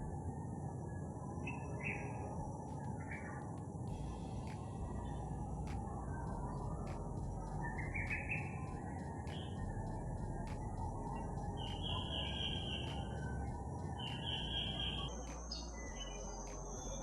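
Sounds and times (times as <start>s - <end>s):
low background rush: 0.0s - 17.0s
wild birds calling: 3.9s - 15.1s.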